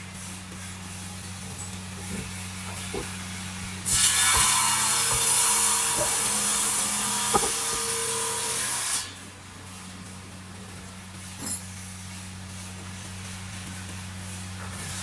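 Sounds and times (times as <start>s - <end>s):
steady low hum: 0.0s - 15.0s
power tool cutting wood: 1.2s - 9.4s.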